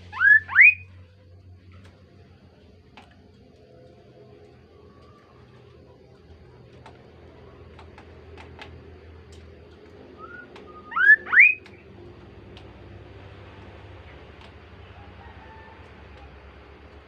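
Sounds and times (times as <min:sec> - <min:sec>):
bird whistling calls: 0:00.0 - 0:00.9, 0:10.2 - 0:11.8.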